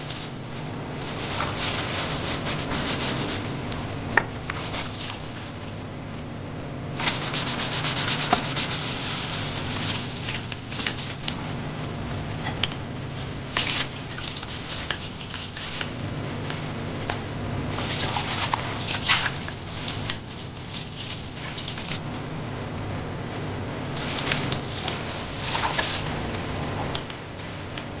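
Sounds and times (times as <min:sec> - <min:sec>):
scrubbing on a hard surface: 0:01.0 - 0:03.6, 0:07.0 - 0:11.2, 0:17.7 - 0:22.0, 0:24.0 - 0:26.3.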